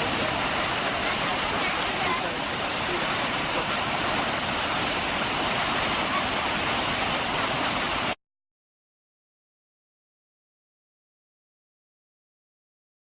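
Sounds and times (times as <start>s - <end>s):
rushing water: 0.0s - 8.2s.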